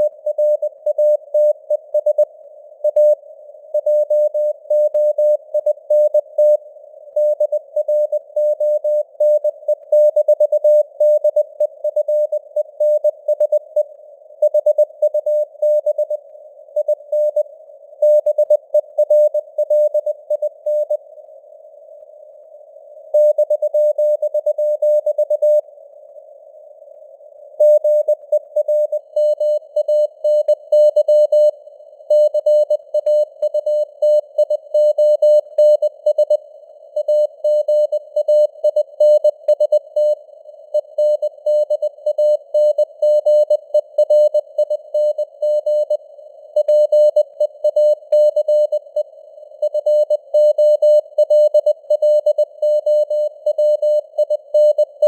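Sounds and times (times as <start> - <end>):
faint radio hiss: 0.0 - 9.7, 10.8 - 42.8, 43.4 - 50.1
morse code beeps: 46.6 - 49.0.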